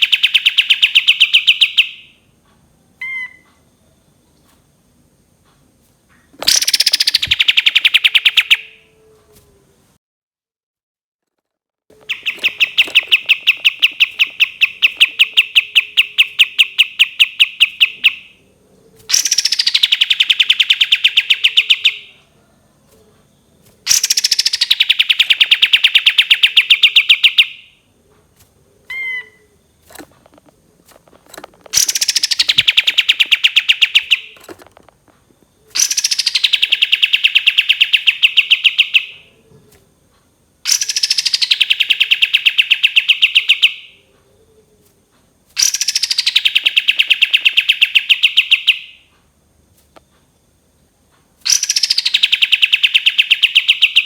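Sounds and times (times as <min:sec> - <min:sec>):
bird rattling song: 0:00.0 - 0:02.2, 0:06.2 - 0:08.8, 0:11.9 - 0:18.4, 0:19.0 - 0:22.1, 0:23.8 - 0:27.7, 0:28.5 - 0:39.2, 0:40.7 - 0:43.9, 0:45.6 - 0:49.0, 0:51.4 - 0:54.0
bird chirp: 0:00.0 - 0:02.3, 0:03.0 - 0:04.5, 0:06.1 - 0:09.0, 0:11.9 - 0:39.7, 0:40.6 - 0:44.8, 0:45.6 - 0:49.1, 0:51.5 - 0:54.0.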